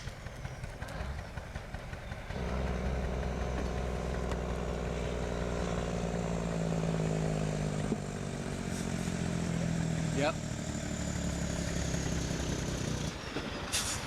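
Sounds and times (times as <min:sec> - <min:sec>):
vehicle engine running: 0:00.0 - 0:13.7.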